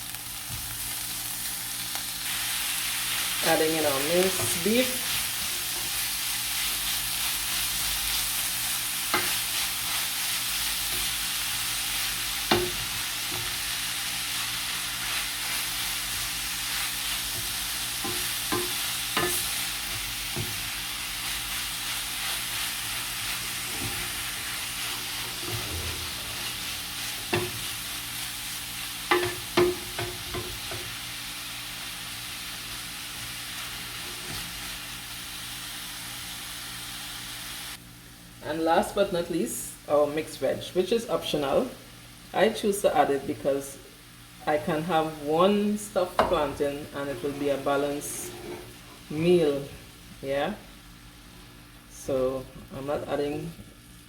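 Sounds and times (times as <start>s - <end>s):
meat sizzling in a pan: 0.0s - 38.4s
utensil scraping a pan: 22.2s - 30.9s, 46.1s - 49.2s.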